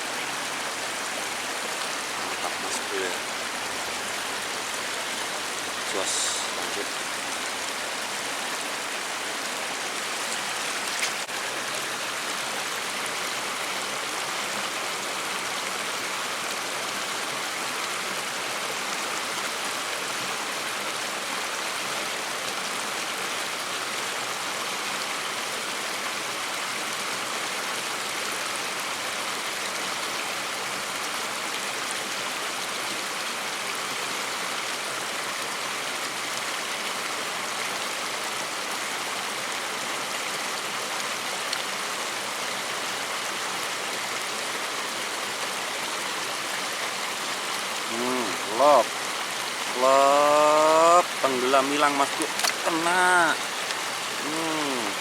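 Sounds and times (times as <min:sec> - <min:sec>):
water rushing in a stream: 0:00.0 - 0:55.0.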